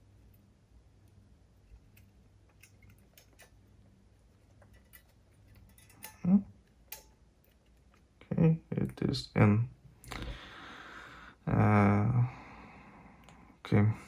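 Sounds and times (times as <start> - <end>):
tools and small parts clicking: 1.6 - 3.6, 4.5 - 8.0.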